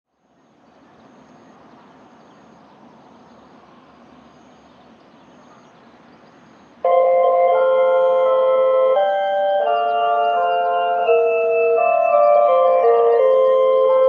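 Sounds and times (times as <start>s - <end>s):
low hiss of distant noise: 0.1s - 14.0s
loudspeaker bell chime: 6.9s - 14.0s.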